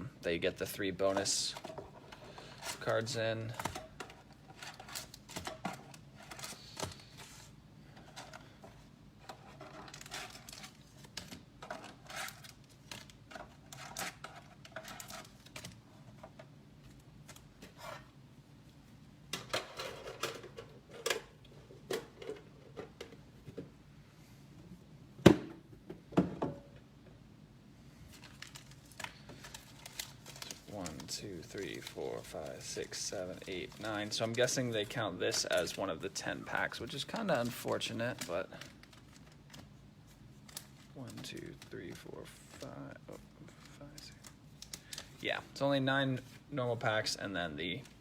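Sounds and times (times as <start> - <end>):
card packs crinkling and clicking: 0.4 - 17.7, 28.1 - 45.8, 46.7 - 48.0.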